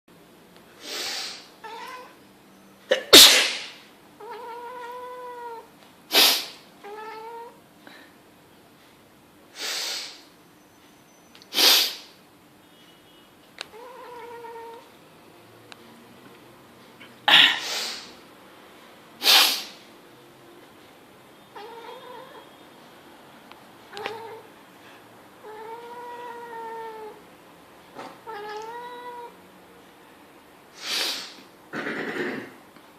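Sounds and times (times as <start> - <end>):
cat meowing: 1.6 - 2.2, 4.2 - 5.7, 6.8 - 7.6, 13.7 - 14.9, 21.5 - 22.6, 23.9 - 24.5, 25.4 - 27.2, 28.0 - 29.4
person sneezing: 2.9 - 3.8, 6.1 - 6.6, 17.3 - 18.1.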